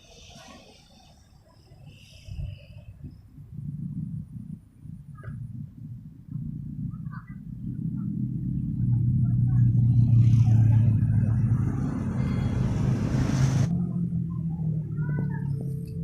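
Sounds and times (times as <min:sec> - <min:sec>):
hiss: 0:00.0 - 0:02.9, 0:12.4 - 0:13.7
motor vehicle engine rumble: 0:00.0 - 0:16.0.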